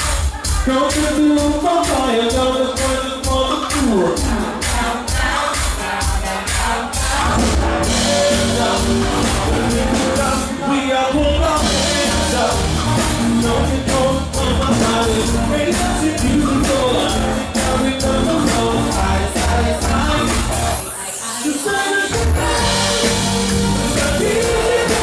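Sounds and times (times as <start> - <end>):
drum kit beat: 0.0 - 21.0, 22.0 - 25.0
person singing: 0.0 - 25.0
keyboard: 6.9 - 25.0
bass guitar: 7.1 - 10.6, 11.2 - 20.8, 22.1 - 25.0
electric guitar: 7.2 - 10.6, 11.4 - 20.8, 22.1 - 25.0.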